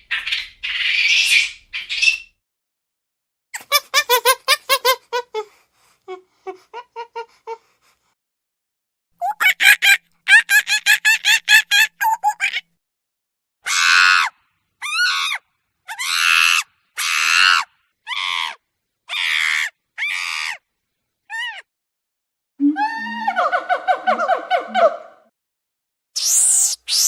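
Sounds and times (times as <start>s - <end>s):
monkey harsh screeches: 13.7s - 20.6s, 26.2s - 27.0s.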